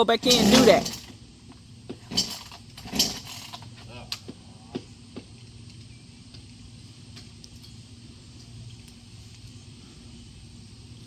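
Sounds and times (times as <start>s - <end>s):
chainsaw idling: 0.0s - 1.2s.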